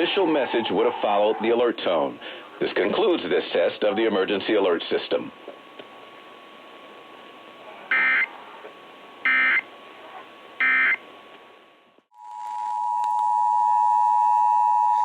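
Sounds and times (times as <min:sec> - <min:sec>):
radio hiss: 0:00.0 - 0:12.0
digital data squawks: 0:07.9 - 0:08.3.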